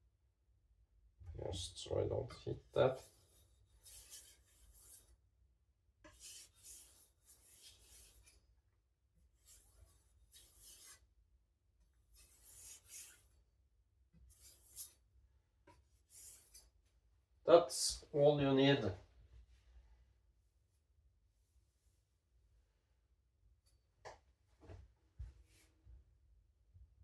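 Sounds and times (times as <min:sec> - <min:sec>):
knife edge rasping across a sheet: 0:02.9 - 0:05.2, 0:06.0 - 0:08.5, 0:09.3 - 0:11.1, 0:12.0 - 0:13.4, 0:14.3 - 0:15.0, 0:15.7 - 0:16.8.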